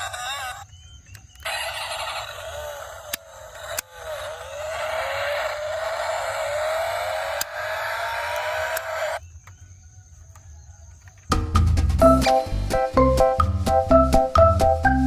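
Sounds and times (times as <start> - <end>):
toy car electric motor whine: 0.0 - 0.6, 1.4 - 9.2
sharp clicks: 7.3 - 9.6.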